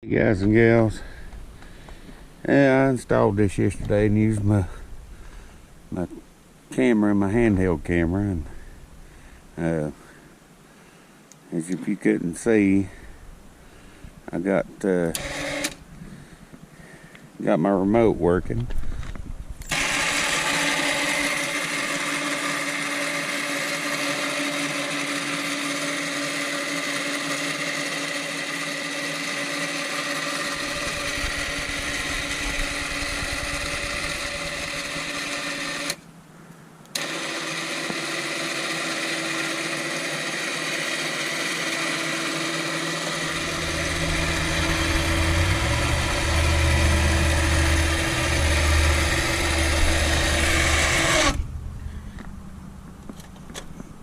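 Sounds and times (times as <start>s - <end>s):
electric winch motor whine: 15.1s - 15.8s, 19.6s - 36.0s, 36.9s - 52.5s
low rumble: 43.2s - 54.0s.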